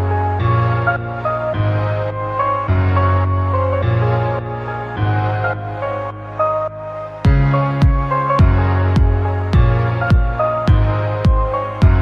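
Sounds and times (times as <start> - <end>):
electronic music: 0.0 - 12.0
kick drum beat: 7.3 - 12.0.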